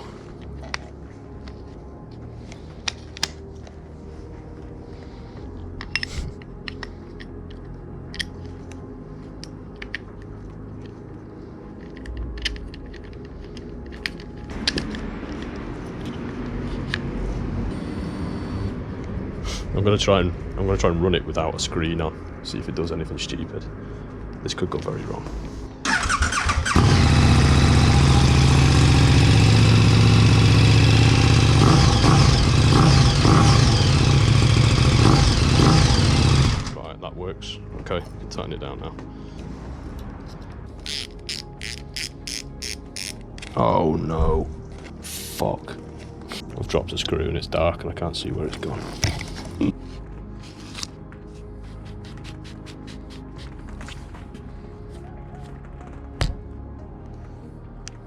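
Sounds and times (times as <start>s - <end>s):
clicks and taps of parts handled: 11.8s - 15.0s
motorcycle engine idling: 25.8s - 36.8s.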